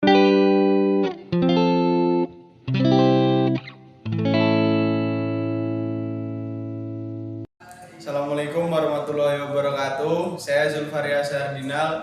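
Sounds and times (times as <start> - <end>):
held music chords: 0.0 - 7.5.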